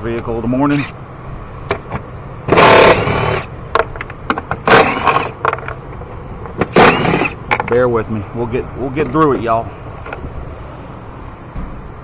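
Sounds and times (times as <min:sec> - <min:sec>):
small power tool spinning: 0:02.5 - 0:03.5, 0:04.6 - 0:05.4, 0:06.7 - 0:07.4.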